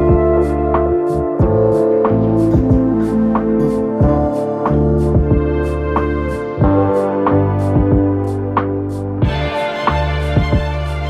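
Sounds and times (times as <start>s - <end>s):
keyboard music with bass and beat: 0.0s - 11.0s.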